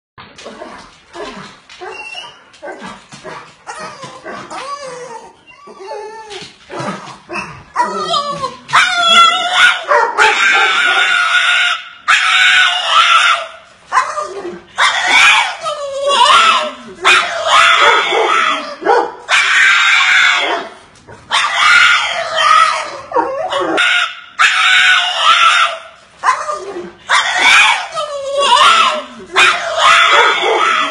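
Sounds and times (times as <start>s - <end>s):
dog whining and whimpering: 1.8s - 2.8s, 3.7s - 6.6s, 7.3s - 9.6s
bulldog crying: 3.6s - 20.7s, 21.3s - 30.9s.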